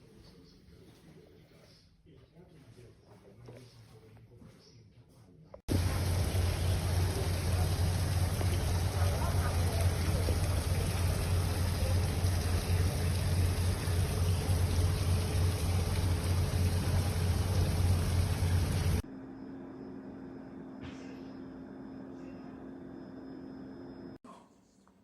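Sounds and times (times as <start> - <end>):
espresso machine pump humming: 5.7 - 24.1
faint steady hum: 5.7 - 24.9.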